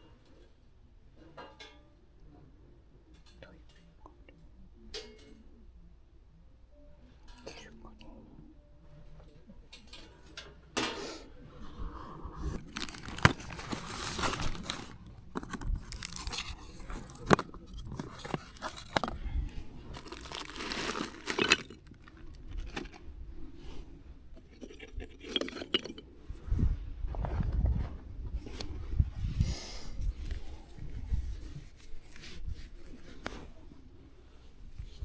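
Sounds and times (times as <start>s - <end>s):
rustling and crinkling of gear: 12.3s - 35.0s.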